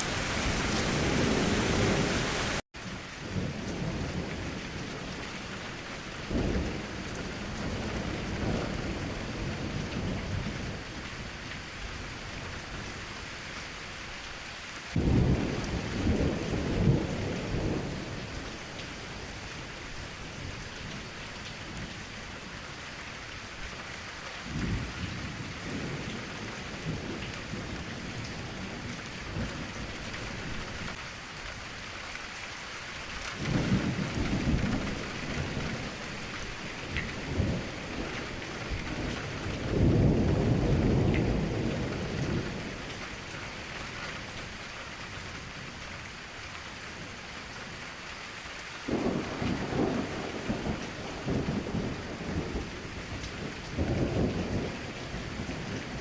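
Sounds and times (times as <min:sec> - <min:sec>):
steady rain falling: 0:00.0 - 0:56.0
rolling thunder rumbling: 0:14.9 - 0:19.7, 0:33.4 - 0:42.9, 0:48.9 - 0:56.0.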